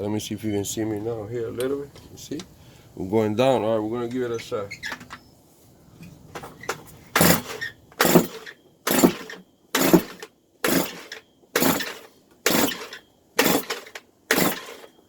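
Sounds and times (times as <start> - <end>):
recoil starter cord pulls: 7.2 - 14.9.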